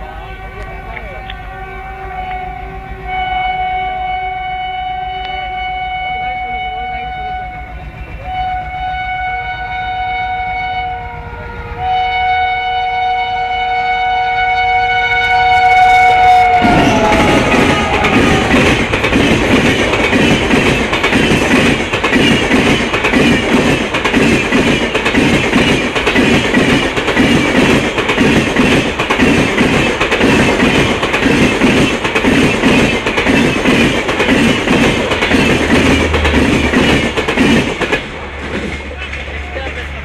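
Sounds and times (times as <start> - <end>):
train rolling noise: 0.0 - 40.0
train wheels clattering over rail joints: 16.5 - 40.0.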